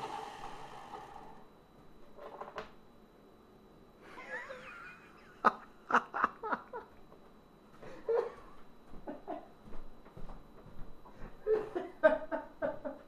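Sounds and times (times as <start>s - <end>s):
man laughing: 4.0s - 7.0s, 7.9s - 9.6s, 11.4s - 13.0s
faint breathing: 7.8s - 8.2s, 11.1s - 11.5s.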